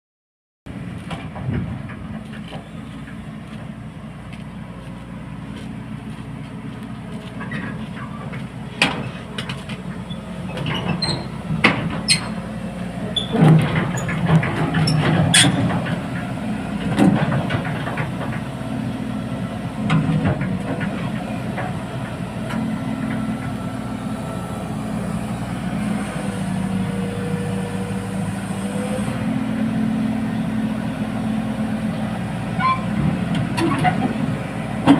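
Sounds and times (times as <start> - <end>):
diesel engine running under load: 0.7 - 34.9
metal clanks and knocks: 7.4 - 12.4, 13.2 - 18.5.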